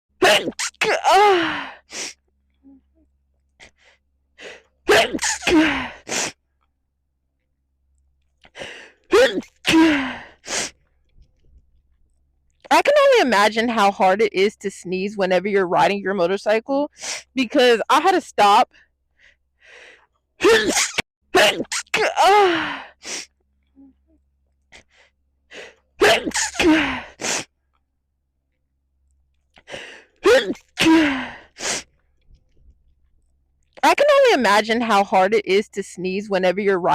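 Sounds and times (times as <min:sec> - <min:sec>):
person sneezing: 0:00.2 - 0:02.2, 0:04.4 - 0:06.4, 0:09.1 - 0:10.7, 0:20.4 - 0:23.3, 0:26.0 - 0:27.5, 0:30.2 - 0:31.8
short breath: 0:19.2 - 0:20.0.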